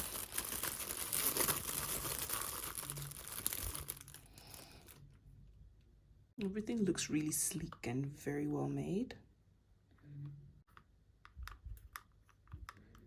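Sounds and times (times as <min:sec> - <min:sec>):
plastic packaging crinkling: 0:00.0 - 0:05.0.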